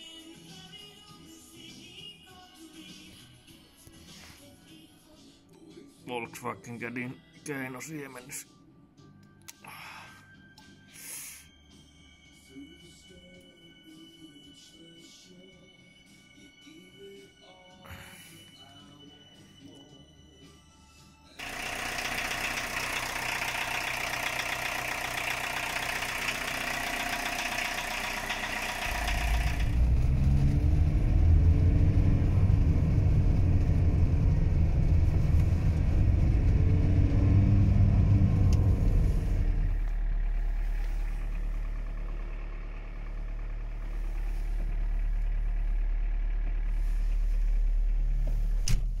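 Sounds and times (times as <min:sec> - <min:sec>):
loud low drivetrain rumble: 0:21.4 - 0:49.0.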